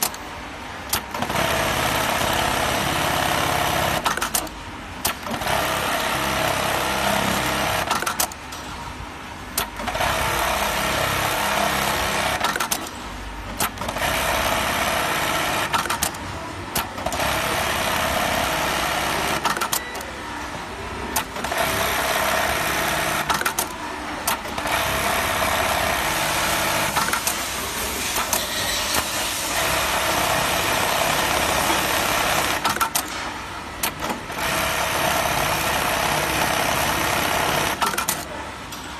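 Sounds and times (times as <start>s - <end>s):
sewing machine clicks: 0.9s - 8.4s, 9.6s - 12.9s, 33.8s - 38.4s
sewing machine stitching: 0.9s - 8.4s, 9.6s - 12.9s, 13.5s - 16.2s, 16.8s - 19.9s, 21.1s - 33.0s, 33.8s - 38.3s.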